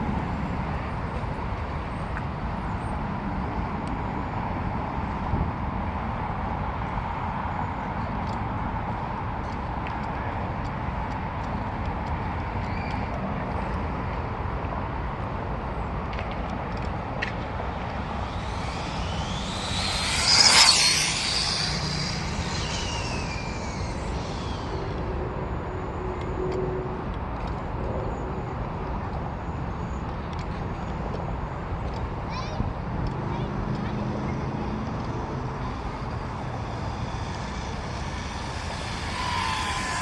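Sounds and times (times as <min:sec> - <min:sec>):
outdoor background noise: 0:00.0 - 0:40.0
rc car motor whine: 0:16.7 - 0:26.2, 0:33.6 - 0:40.0.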